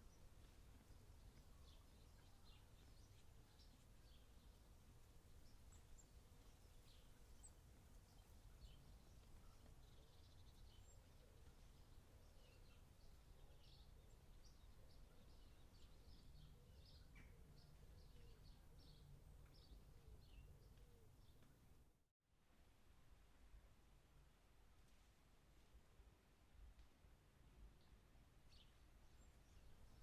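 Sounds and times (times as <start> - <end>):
small birds chirping: 0.0 - 21.8.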